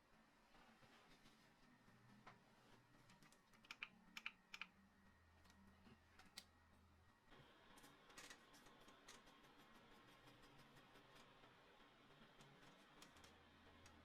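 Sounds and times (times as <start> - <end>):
faint small clicks and taps: 3.0 - 4.8, 5.4 - 6.6, 12.4 - 14.0.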